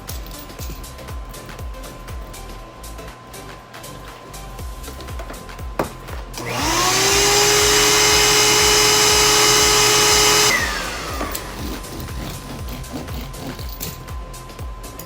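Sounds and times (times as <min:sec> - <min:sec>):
background music: 0:00.0 - 0:15.0
electric motor whine: 0:06.3 - 0:15.0.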